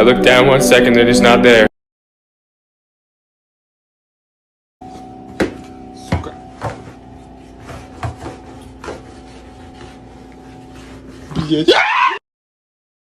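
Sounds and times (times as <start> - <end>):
steady low hum: 4.8 - 11.6.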